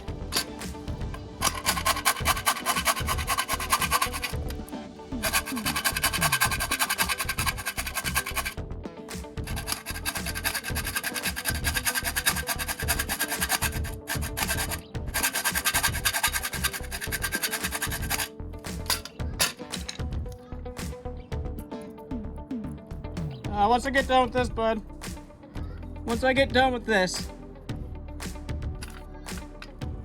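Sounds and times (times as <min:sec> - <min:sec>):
scratching and rubbing: 0:00.0 - 0:20.0
music playing: 0:00.0 - 0:30.0.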